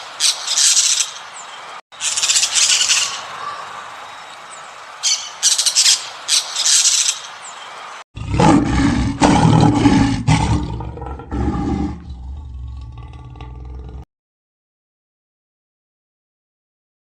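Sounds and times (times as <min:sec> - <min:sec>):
high-pitched chirping calls: 0:02.0 - 0:07.8
large animal roaring: 0:08.2 - 0:14.1.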